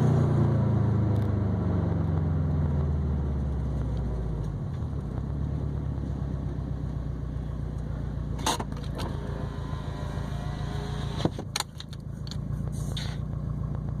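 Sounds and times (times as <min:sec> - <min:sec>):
car exhaust droning: 0:00.0 - 0:14.0.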